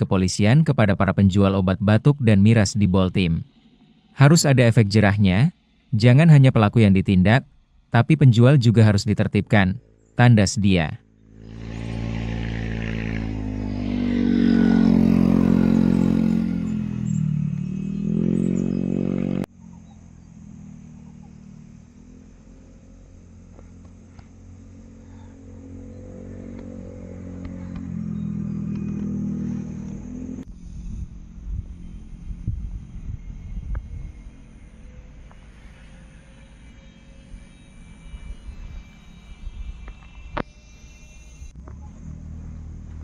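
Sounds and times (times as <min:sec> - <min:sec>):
motorcycle engine running: 0:11.0 - 0:36.1, 0:41.6 - 0:43.0.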